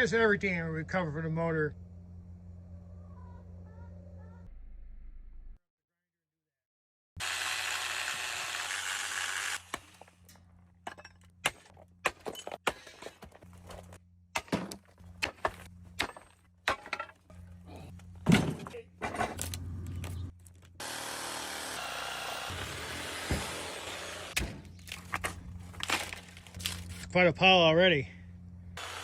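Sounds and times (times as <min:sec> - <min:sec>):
low steady hum: 0:00.0 - 0:04.5, 0:24.4 - 0:28.8.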